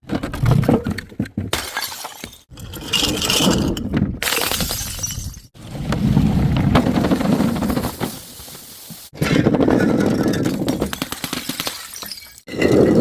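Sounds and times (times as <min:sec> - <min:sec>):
glass bottles smashing: 0:01.6 - 0:03.4, 0:04.2 - 0:05.5, 0:10.4 - 0:13.0.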